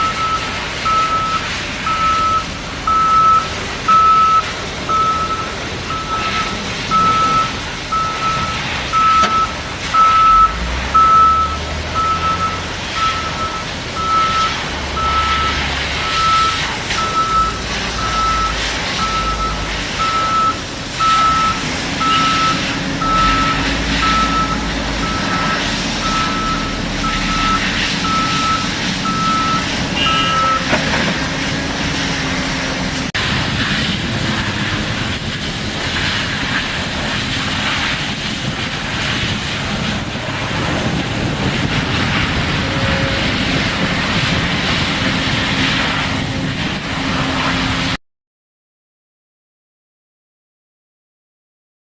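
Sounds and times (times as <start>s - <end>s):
reversing alarm beeping: 0.0s - 30.8s
diesel engine running: 0.0s - 48.0s.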